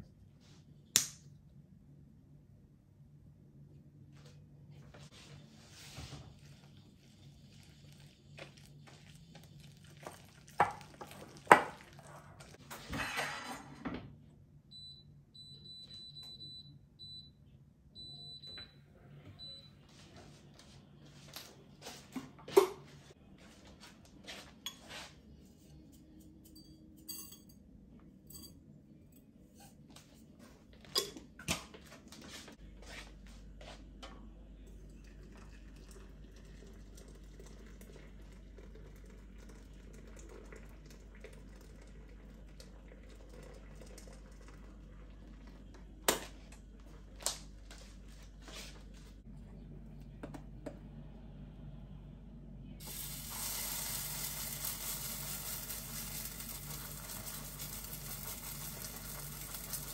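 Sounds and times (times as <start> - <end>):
dishes and utensils clinking: 24.6 - 29.8, 30.8 - 31.3.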